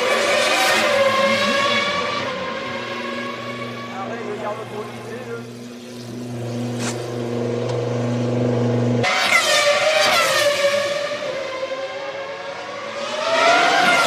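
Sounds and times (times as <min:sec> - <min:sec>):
racing car engine revving: 0:00.0 - 0:14.0
steady low engine note: 0:03.0 - 0:09.0.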